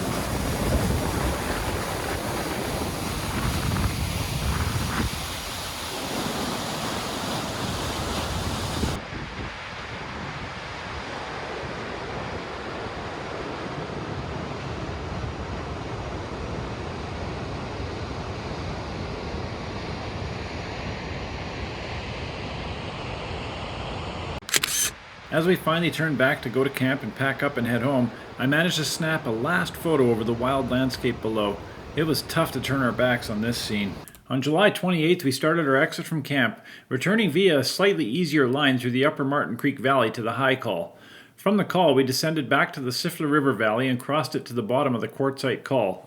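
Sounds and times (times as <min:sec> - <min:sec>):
wind buffeting microphone: 0:00.0 - 0:06.3, 0:07.5 - 0:12.4, 0:25.7 - 0:34.0
waterfall rushing: 0:25.3 - 0:34.1.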